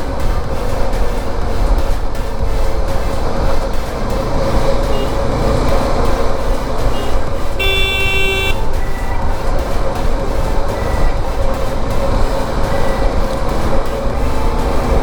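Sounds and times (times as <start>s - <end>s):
traffic noise: 0.0s - 15.0s
vehicle horn honking: 4.9s - 5.4s, 6.9s - 9.2s.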